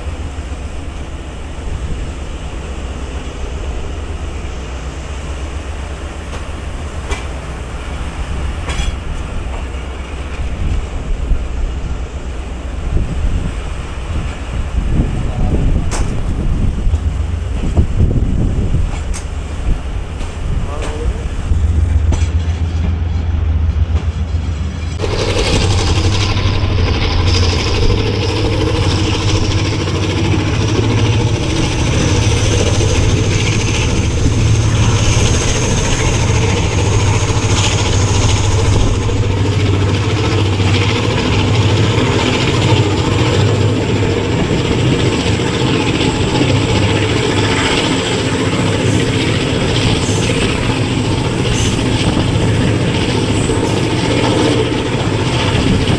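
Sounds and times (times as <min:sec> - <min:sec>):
locomotive engine drone: 0:00.0 - 0:55.9
wind noise: 0:00.0 - 0:55.9
wheels on rails: 0:05.6 - 0:55.9.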